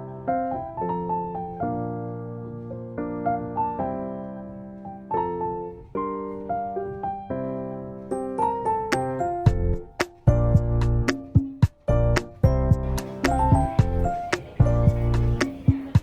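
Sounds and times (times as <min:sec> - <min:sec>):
slow piano music: 0:00.0 - 0:16.0.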